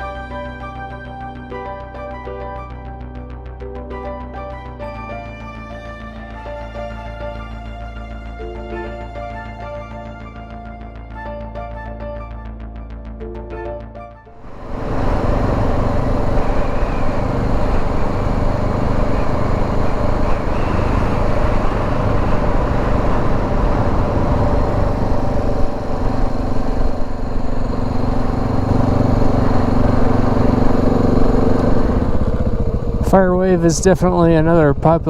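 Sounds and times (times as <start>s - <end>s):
motorcycle engine running: 14.4s - 35.0s
road and air noise: 14.4s - 35.0s.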